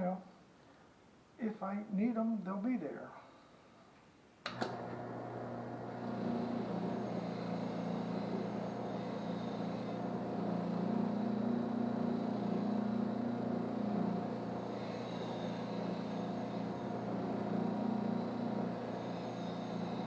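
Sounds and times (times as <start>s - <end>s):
power wire wheel motor hum: 4.5s - 20.0s.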